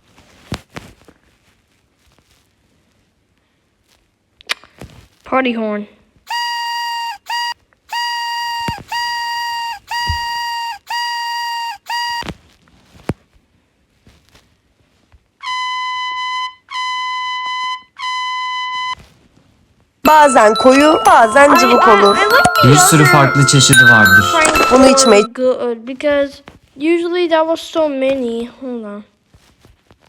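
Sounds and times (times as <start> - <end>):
party horn blasts: 6.3 - 12.3, 20.1 - 25.3.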